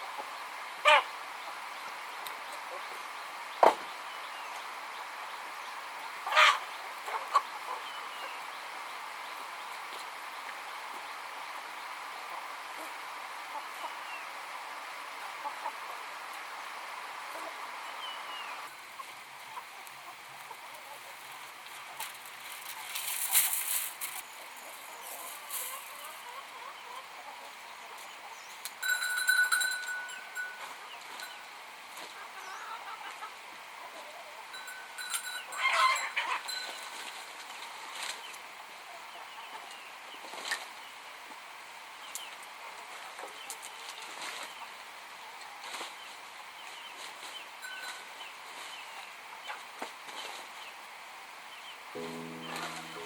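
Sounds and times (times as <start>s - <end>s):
chickens clucking: 0.1s - 3.0s, 5.8s - 8.4s, 24.6s - 31.2s, 32.0s - 37.0s, 52.0s - 53.0s
rustling and scraping: 21.2s - 26.2s.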